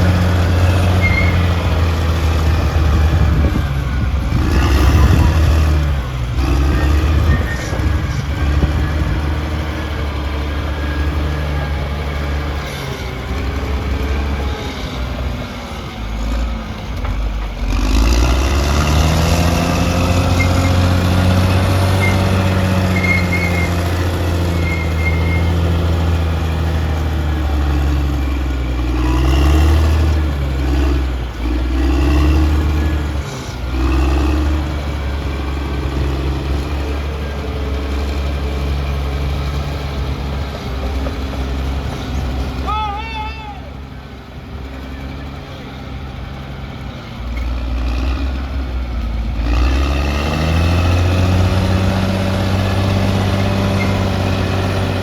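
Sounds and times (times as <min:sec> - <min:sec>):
bulldozer diesel engine under load: 0:00.0 - 0:55.0
brief high squeaks: 0:01.0 - 0:01.6, 0:06.8 - 0:08.2, 0:24.6 - 0:25.6.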